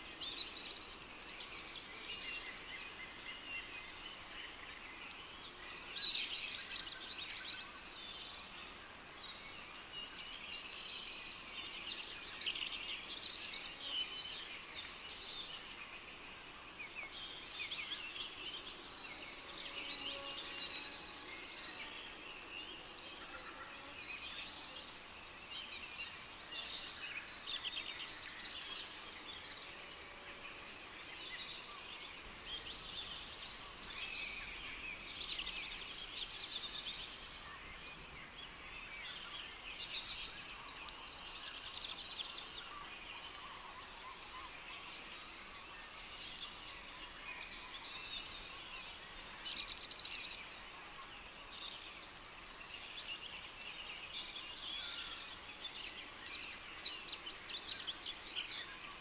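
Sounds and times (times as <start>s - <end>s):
cricket chirping: 23.9s - 59.0s.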